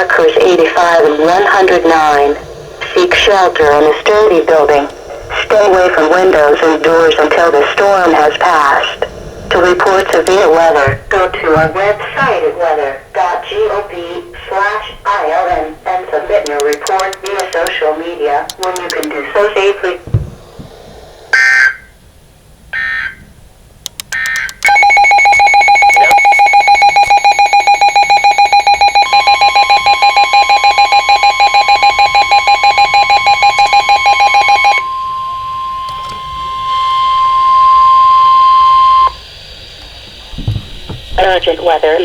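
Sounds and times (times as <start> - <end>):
screeching data tones: 0.1 - 11.1, 16.5 - 17.8, 18.5 - 19.9, 21.3 - 22.0, 22.7 - 23.2, 23.9 - 42.0
pulsing two-tone alert signal: 16.5 - 17.7, 24.0 - 39.2
steady single-pitch alert tone: 24.0 - 39.2.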